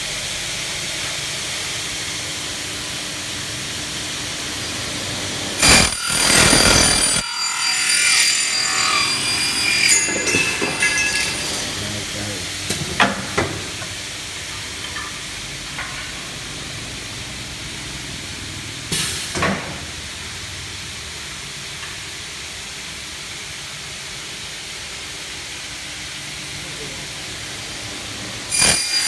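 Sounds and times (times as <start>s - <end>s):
metal-cutting saw running: 5.6s - 12.3s, 28.5s - 29.0s.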